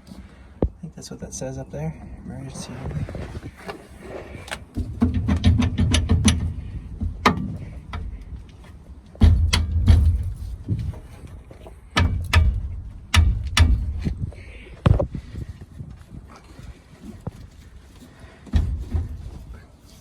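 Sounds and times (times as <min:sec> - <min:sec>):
metal parts clanking and rattling: 0:04.4 - 0:14.2
heavy low thumps: 0:09.1 - 0:11.1, 0:11.8 - 0:16.0.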